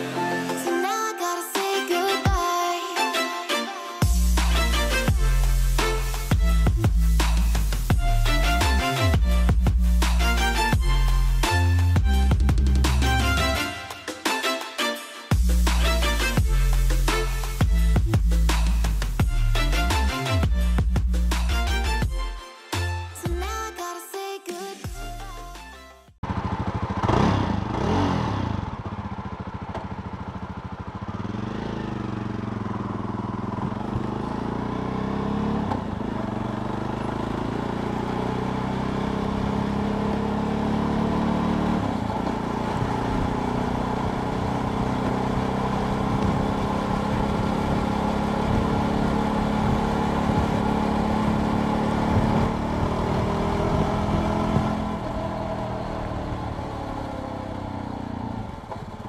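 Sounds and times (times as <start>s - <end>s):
motorcycle engine revving: 4.0s - 13.6s, 26.2s - 59.0s.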